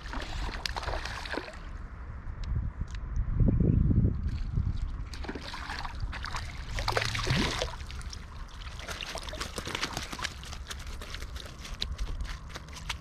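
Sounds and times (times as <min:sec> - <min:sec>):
river water splashing: 0:00.0 - 0:01.8, 0:05.0 - 0:13.0.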